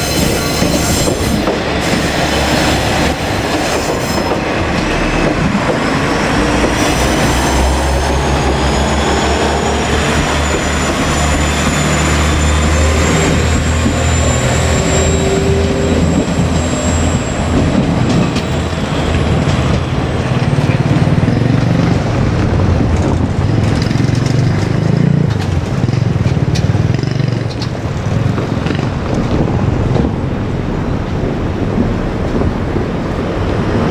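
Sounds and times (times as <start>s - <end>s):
high wheel squeal: 0.0s - 20.6s
train wheels clattering on rails: 0.0s - 33.9s.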